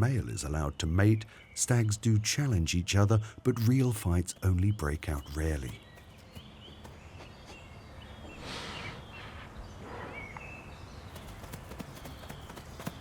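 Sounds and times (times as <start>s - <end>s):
high bird chirps: 0.0s - 13.0s
breathy swells of noise: 8.2s - 10.3s.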